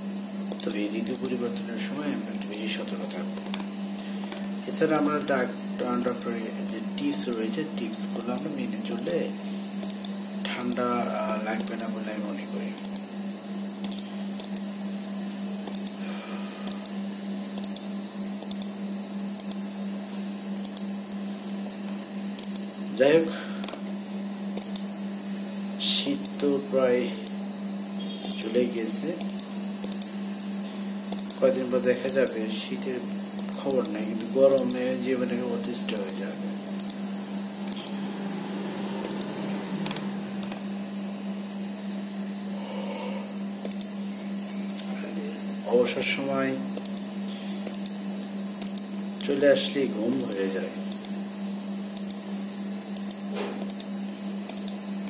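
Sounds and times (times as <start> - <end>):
steady low hum: 0.0 - 55.0
computer keyboard clicks: 6.0 - 6.3, 9.8 - 11.9, 13.8 - 14.7, 15.7 - 16.0, 17.6 - 18.7, 22.4 - 22.7, 24.6 - 24.9, 29.2 - 30.1, 31.1 - 31.4, 33.4 - 34.8, 36.8 - 37.0, 39.0 - 40.6, 43.6 - 43.9, 46.8 - 48.0, 48.6 - 49.5, 52.0 - 52.2, 52.9 - 53.9, 54.5 - 54.8
light clicks: 6.0 - 6.3, 9.8 - 11.9, 28.2 - 28.5, 29.2 - 30.1, 31.1 - 31.4, 33.4 - 34.8, 35.9 - 37.0, 37.6 - 38.0, 43.6 - 43.9, 52.9 - 53.9, 54.5 - 54.8.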